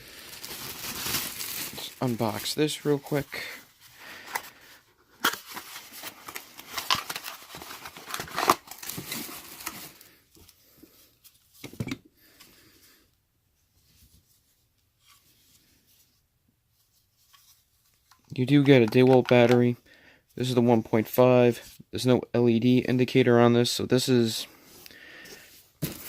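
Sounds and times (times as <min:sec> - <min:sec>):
plastic packaging crinkling and tearing: 0:00.0 - 0:10.1
faint handling sounds: 0:00.2 - 0:22.0.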